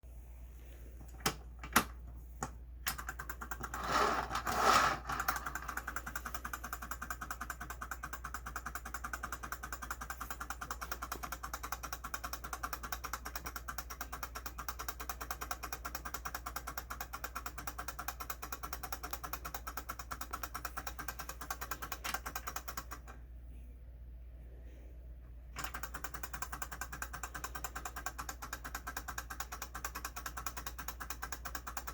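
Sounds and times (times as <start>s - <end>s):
clockwork turntable ticking: 4.8s - 23.1s, 25.6s - 31.9s.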